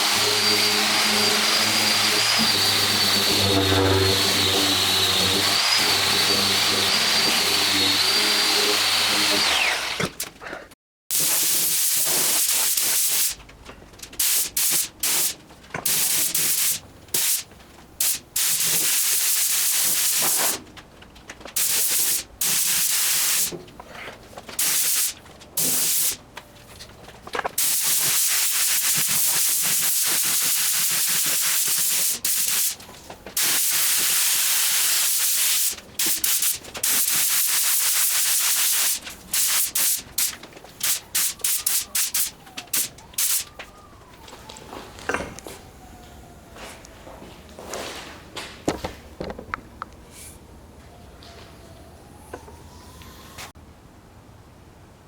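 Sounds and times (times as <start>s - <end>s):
motor running: 0.0s - 10.1s
paint spraying hiss: 11.1s - 13.4s, 14.2s - 20.6s, 21.6s - 23.5s, 24.6s - 26.2s, 27.6s - 32.8s, 33.4s - 43.5s.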